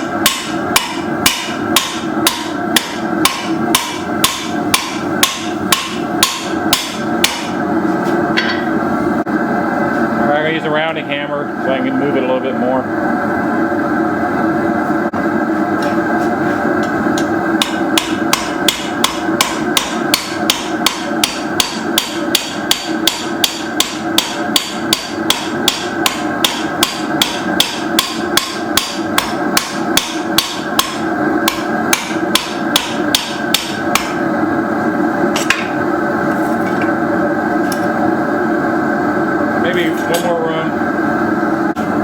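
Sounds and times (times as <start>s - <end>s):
hammer striking steel on anvil: 0.0s - 7.6s, 8.4s - 8.8s, 17.2s - 34.2s.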